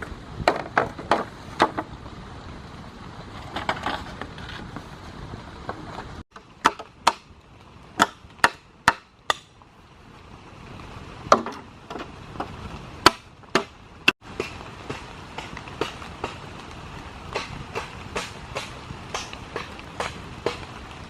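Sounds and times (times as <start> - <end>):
wood chopping strokes: 12.4 - 20.9.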